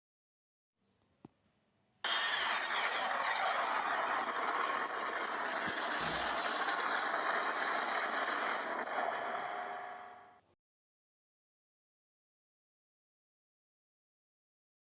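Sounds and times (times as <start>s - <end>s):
dense mechanical noise: 2.1s - 10.3s.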